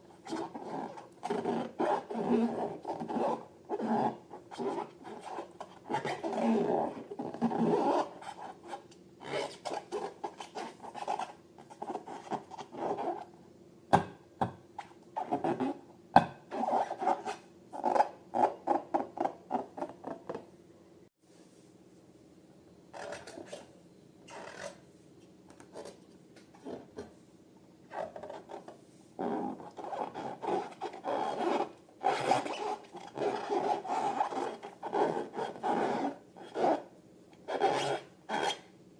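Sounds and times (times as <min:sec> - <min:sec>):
rubbing and scraping balloons: 0:00.2 - 0:13.3, 0:27.9 - 0:36.9.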